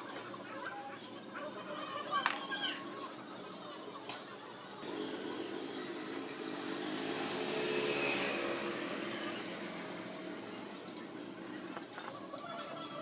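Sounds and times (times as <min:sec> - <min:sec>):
vehicle passing by: 0:04.8 - 0:11.8.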